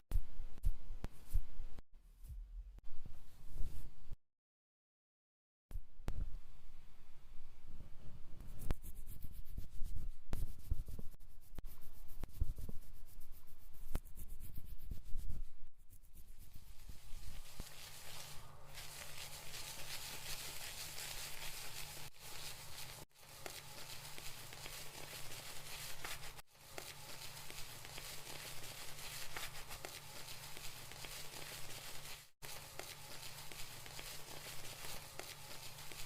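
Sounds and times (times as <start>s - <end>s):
fingers rubbing through hair: 8.5s - 36.0s.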